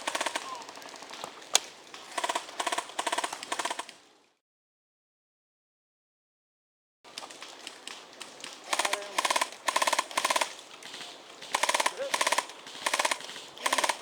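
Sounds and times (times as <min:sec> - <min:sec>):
airsoft gun full-auto bursts: 0:00.0 - 0:00.5, 0:02.2 - 0:03.9, 0:08.7 - 0:10.6, 0:11.5 - 0:14.0.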